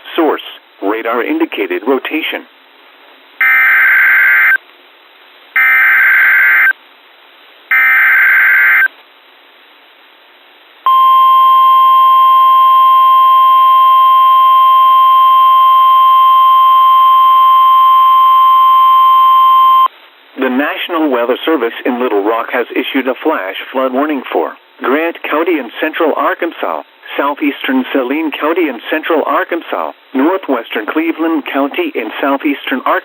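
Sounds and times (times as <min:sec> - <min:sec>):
steady warning alarm tone: 0:03.4 - 0:04.6, 0:05.6 - 0:06.7, 0:07.7 - 0:08.9, 0:10.9 - 0:19.9.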